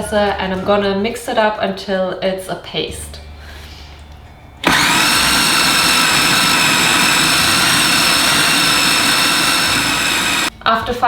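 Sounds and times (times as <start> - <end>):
food processor motor whining: 4.6 - 10.5.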